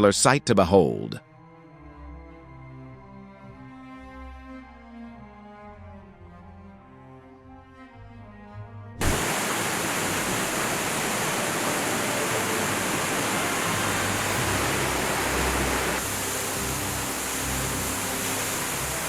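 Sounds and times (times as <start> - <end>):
soft bowed-string music: 1.2 - 9.0, 10.6 - 19.0
loud steady rushing noise: 9.0 - 19.0.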